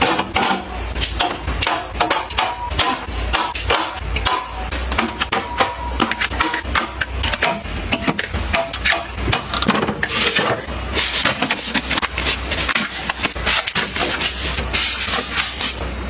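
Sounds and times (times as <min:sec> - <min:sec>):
packaging rustling: 0:10.0 - 0:15.8.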